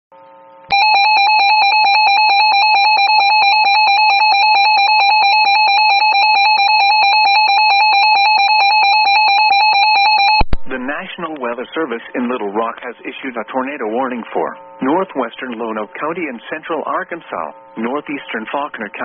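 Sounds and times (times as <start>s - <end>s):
pulsing electronic alarm tone: 0.7s - 10.4s.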